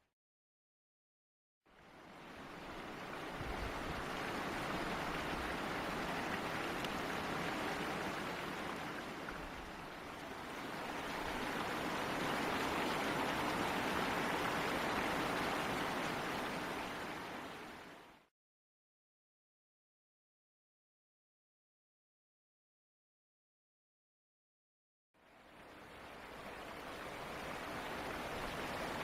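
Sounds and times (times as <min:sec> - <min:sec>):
steady rain falling: 0:01.7 - 0:18.2, 0:25.2 - 0:29.0.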